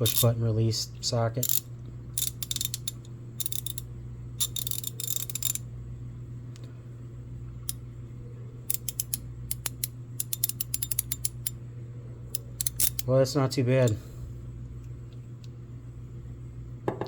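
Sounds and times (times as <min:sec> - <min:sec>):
ratchet clicking: 0:00.0 - 0:00.3, 0:01.4 - 0:05.6, 0:08.7 - 0:11.6, 0:12.3 - 0:13.1
steady low hum: 0:00.0 - 0:17.0.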